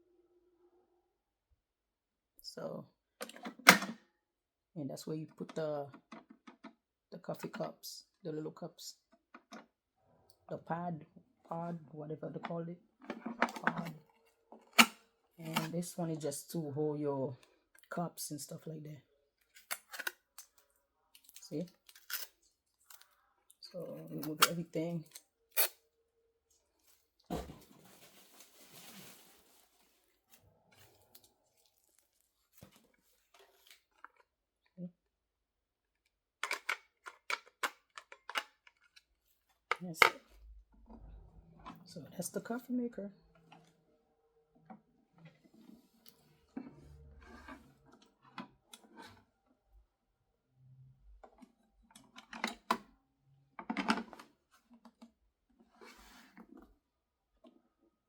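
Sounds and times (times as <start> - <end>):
clicks and knocks of handling: 3.2 - 4.0, 5.5 - 6.8, 13.0 - 15.8, 36.4 - 39.1, 53.6 - 55.1
packaging rustling and tearing: 27.3 - 33.8.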